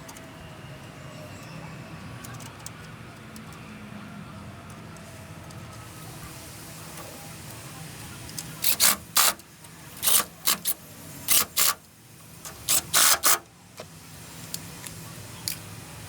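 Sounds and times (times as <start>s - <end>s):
ratchet wrench rasping: 8.6s - 9.4s, 10.0s - 11.8s.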